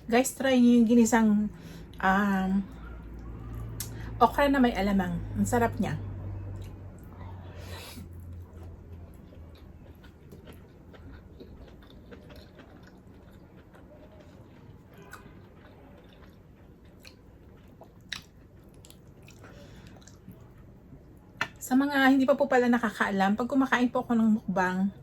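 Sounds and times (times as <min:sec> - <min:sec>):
person chewing food: 0:06.5 - 0:07.4, 0:08.0 - 0:20.8.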